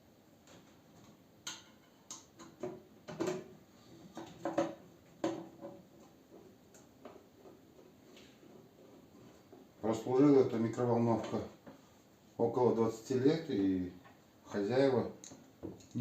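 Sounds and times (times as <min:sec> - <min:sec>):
clicks and taps of tools: 0:00.4 - 0:03.4.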